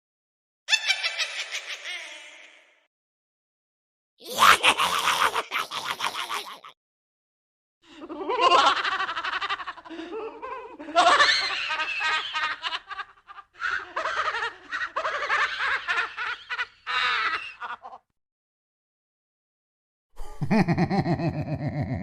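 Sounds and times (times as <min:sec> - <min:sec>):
spooky laughing voice: 0:00.7 - 0:02.8, 0:04.2 - 0:06.8, 0:07.9 - 0:18.1, 0:20.2 - 0:22.0.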